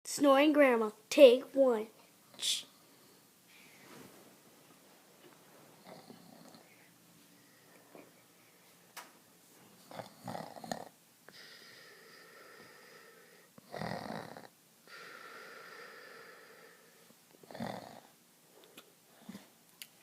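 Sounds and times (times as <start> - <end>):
person snoring: 9.9 - 18.1.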